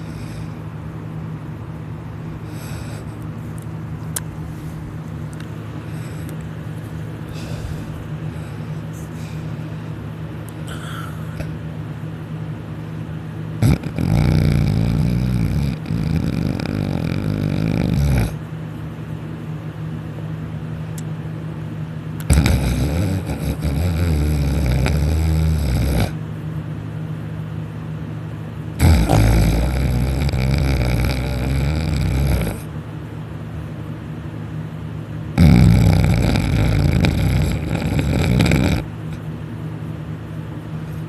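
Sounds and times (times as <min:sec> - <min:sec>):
steady low hum: 0:00.0 - 0:41.0
person snoring loudly: 0:13.6 - 0:18.4, 0:22.2 - 0:26.2, 0:28.8 - 0:32.7, 0:35.4 - 0:38.9.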